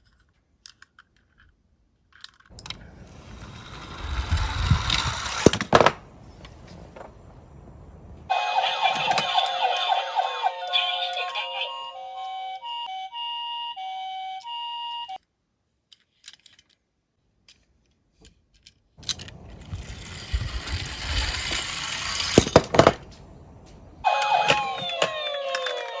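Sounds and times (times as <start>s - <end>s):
toy cars rolling and rattling: 0.0s - 7.5s, 8.4s - 11.3s, 15.9s - 16.9s, 17.5s - 26.0s
toy sirens wailing together: 8.3s - 15.2s, 24.0s - 26.0s
toy two-tone siren: 8.3s - 15.2s, 24.0s - 26.0s.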